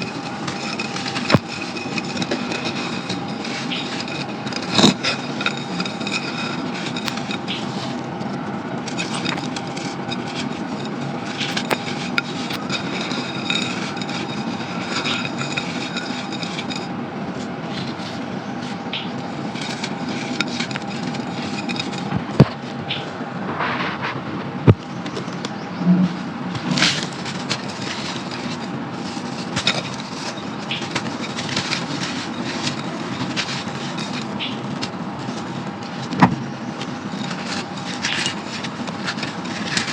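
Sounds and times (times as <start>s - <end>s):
clay clumps crumbling: 0.0s - 23.1s.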